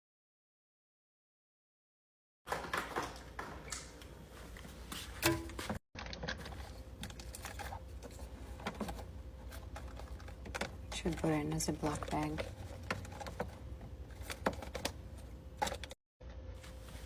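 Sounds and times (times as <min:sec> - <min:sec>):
plastic packaging clicking and knocking: 0:05.2 - 0:15.0.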